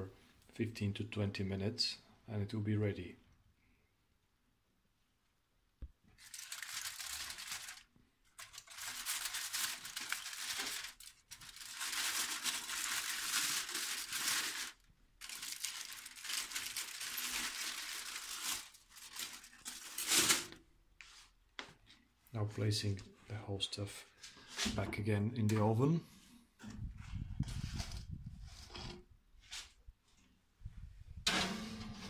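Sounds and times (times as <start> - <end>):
aluminium foil crinkling: 6.1 - 20.6.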